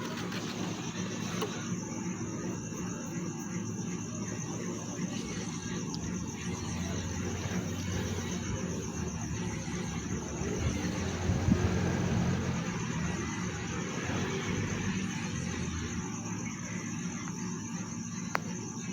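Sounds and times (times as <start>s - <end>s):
night insects chirping: 0.0s - 18.9s
engine rumble passing: 6.6s - 16.0s.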